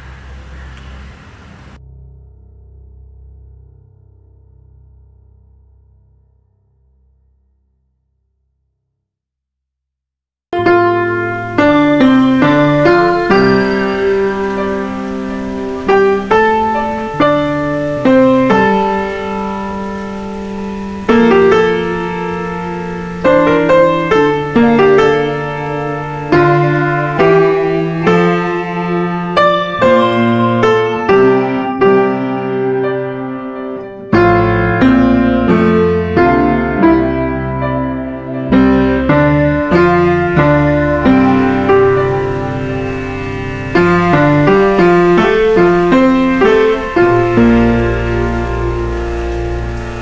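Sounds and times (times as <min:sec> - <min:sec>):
gentle piano music: 0:10.6 - 0:50.0.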